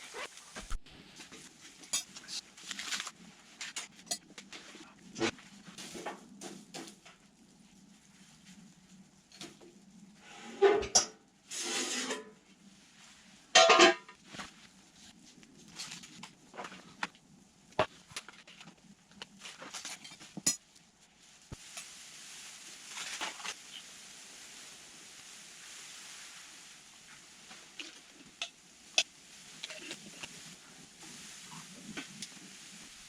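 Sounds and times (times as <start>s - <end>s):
cookware and utensils clinking: 1.8s - 3.0s, 3.6s - 5.3s, 10.6s - 12.4s, 13.6s - 14.2s, 19.6s - 20.7s.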